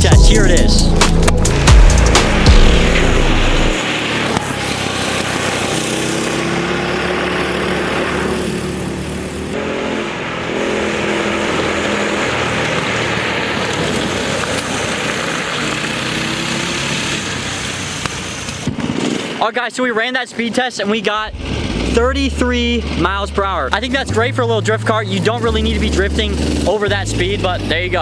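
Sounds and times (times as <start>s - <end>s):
rush of noise: 0.0s - 6.0s, 21.1s - 26.7s
go-kart engine running hard: 1.5s - 19.4s, 21.2s - 28.0s.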